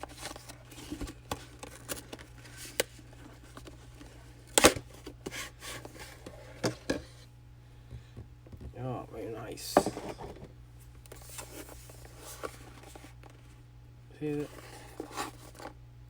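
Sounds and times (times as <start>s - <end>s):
packaging clicks and rustles: 0.0s - 6.3s, 14.3s - 15.8s.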